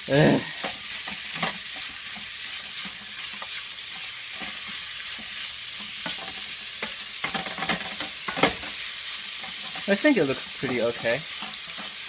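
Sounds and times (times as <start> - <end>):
chicken sizzling in frying pan: 0.0 - 12.0
utensil scraping and knocking pan: 0.6 - 12.0.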